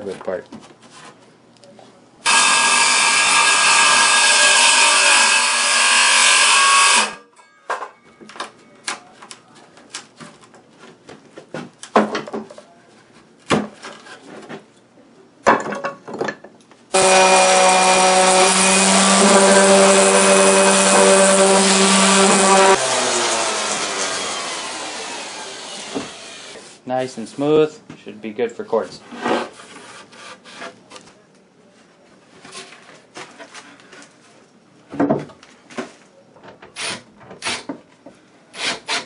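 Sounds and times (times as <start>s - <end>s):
wood router cutting: 2.2s - 7.2s, 16.9s - 26.8s.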